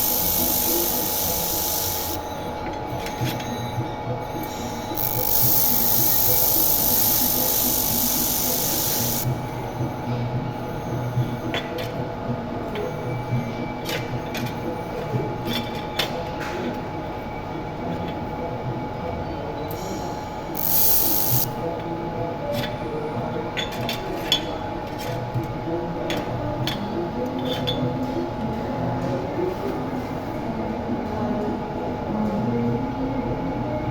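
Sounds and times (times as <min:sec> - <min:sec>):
machinery hum: 0:00.0 - 0:02.2, 0:05.0 - 0:09.3, 0:20.6 - 0:21.5
short burst of hiss: 0:05.0 - 0:09.3, 0:20.6 - 0:21.5.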